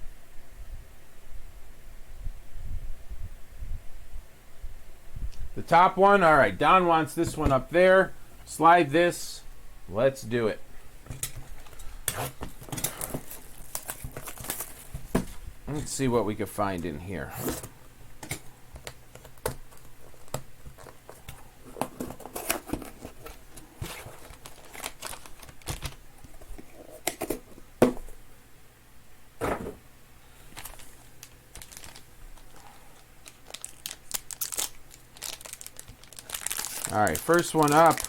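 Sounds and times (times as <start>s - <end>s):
clicks and rustles of handling: 11.0s - 16.0s, 16.7s - 28.2s, 30.5s - 38.0s
plastic packaging crinkling and tearing: 11.2s - 15.4s, 18.8s - 27.0s, 30.5s - 38.0s.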